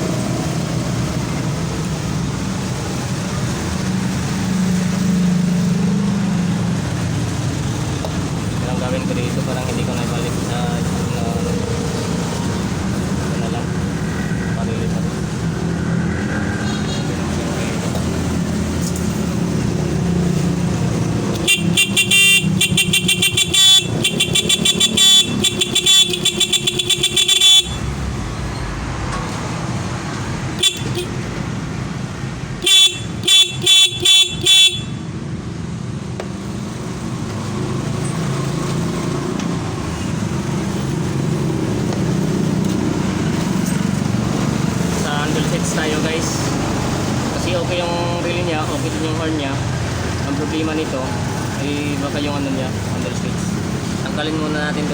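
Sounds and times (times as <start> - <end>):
scooter horn beeping: 21.4 - 27.8, 30.6 - 31.2, 32.6 - 35.1.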